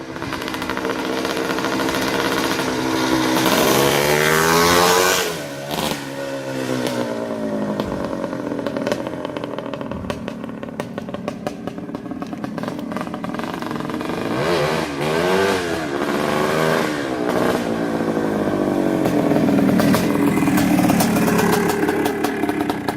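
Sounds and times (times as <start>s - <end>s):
two-stroke motorcycle engine revving: 0.0s - 22.9s.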